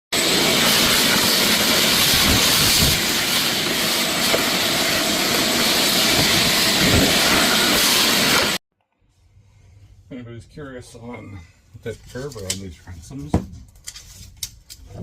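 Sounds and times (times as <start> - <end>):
power tool grinding: 0.2 - 8.6.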